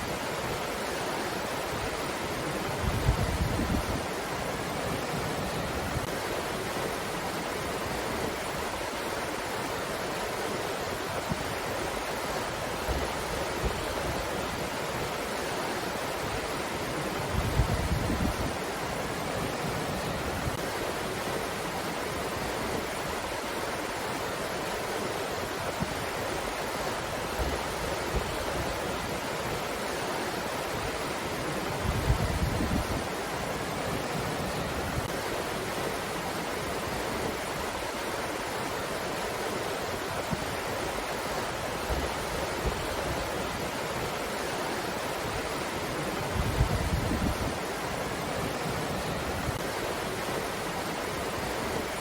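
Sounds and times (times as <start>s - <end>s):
wind buffeting microphone: 2.8s - 4.1s, 17.3s - 18.6s, 31.7s - 33.1s, 46.2s - 47.6s.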